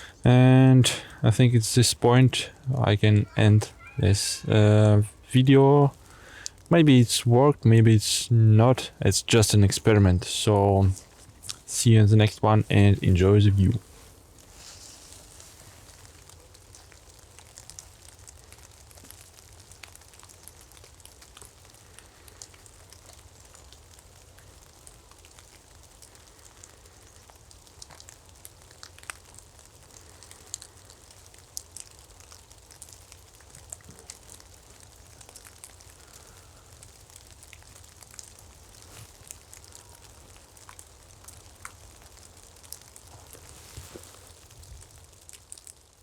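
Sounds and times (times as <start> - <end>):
small sharp ticks and crackling: 5.9 - 6.8, 9.8 - 11.7, 13.7 - 46.0.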